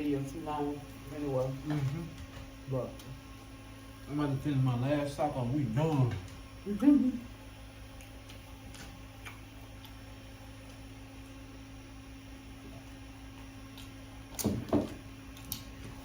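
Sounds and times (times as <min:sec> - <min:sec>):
low electrical hum: 0:00.0 - 0:16.0.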